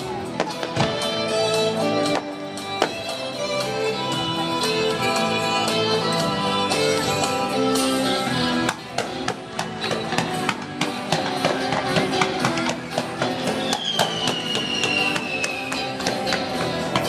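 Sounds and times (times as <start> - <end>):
plucked guitar music: 0.0 - 13.7
falling whistle-like tone: 13.6 - 15.8.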